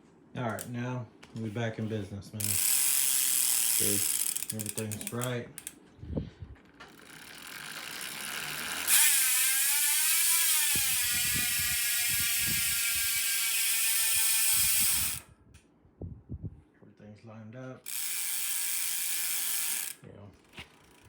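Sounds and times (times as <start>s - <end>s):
bike drivetrain whirring: 2.4s - 5.7s, 6.6s - 15.3s, 17.8s - 21.0s
hub freewheel pawl buzz: 2.4s - 5.8s, 6.7s - 15.3s, 17.8s - 21.0s.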